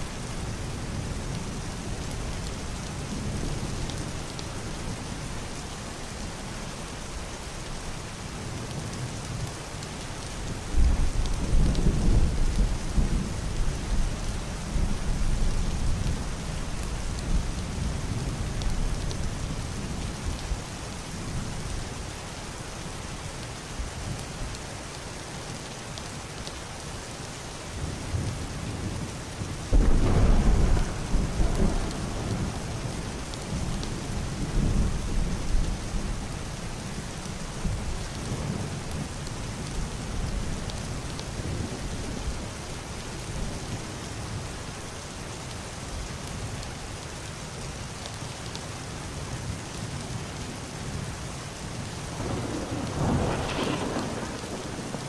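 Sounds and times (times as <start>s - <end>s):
heavy rain on roof and glass: 0.0s - 55.0s
thunder rumbling: 29.7s - 36.9s, 52.2s - 55.0s.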